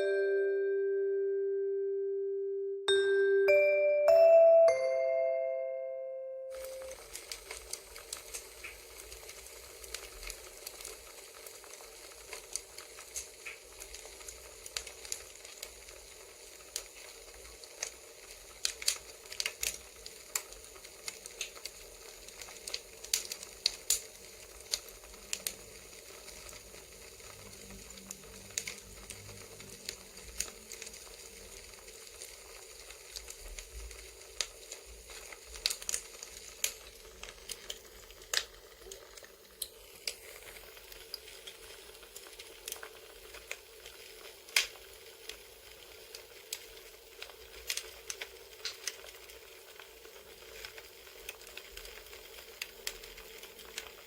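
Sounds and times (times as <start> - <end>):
campfire crackling: 6.5 - 54.0
burning wood popping and snapping: 6.9 - 54.0.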